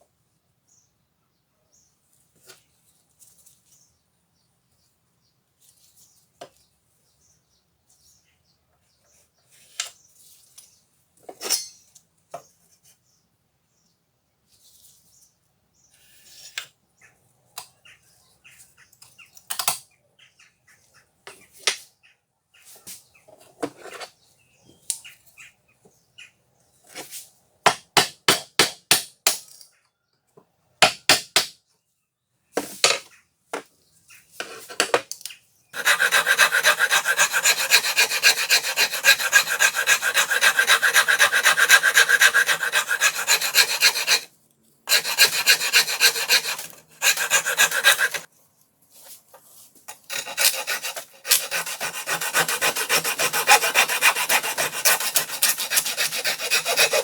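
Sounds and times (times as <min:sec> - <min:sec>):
file scraping screwdriver: 0:35.8 - 0:44.3, 0:44.9 - 0:48.3, 0:49.9 - 0:57.0.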